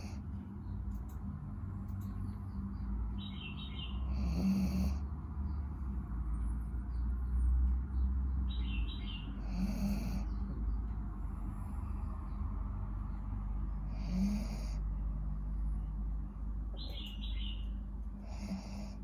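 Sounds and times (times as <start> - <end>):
dog snoring: 4.0 - 5.1, 9.4 - 10.5, 13.8 - 14.9, 18.2 - 19.0.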